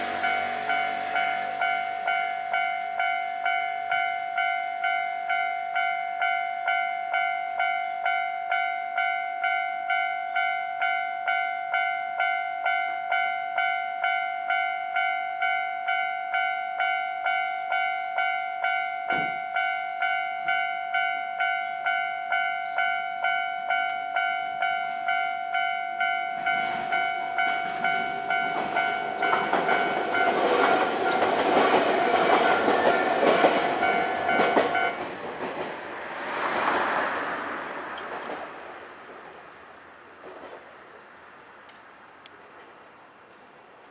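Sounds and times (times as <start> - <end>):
level crossing warning bell ringing: 0.0 - 35.1
electric train rumbling past: 0.0 - 43.9.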